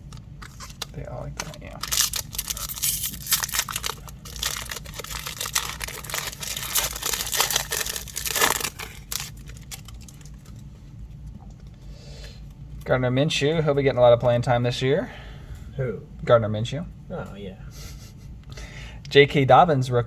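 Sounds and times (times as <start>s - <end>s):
plastic wrapper tearing and crinkling: 0.4s - 10.7s.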